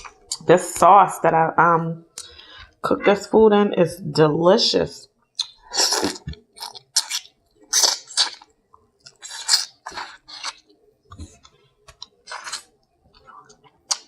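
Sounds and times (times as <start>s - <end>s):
wet chewing and mouth smacking: 5.3s - 14.0s.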